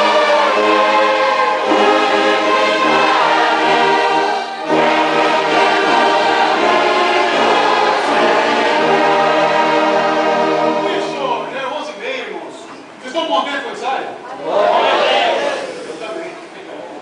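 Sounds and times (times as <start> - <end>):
orchestra and choir singing a hymn: 0.0 - 11.6.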